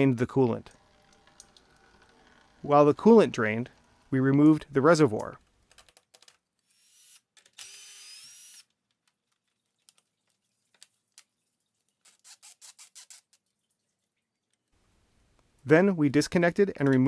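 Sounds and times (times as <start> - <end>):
small power tool whirring: 6.6 - 8.7, 12.1 - 13.4.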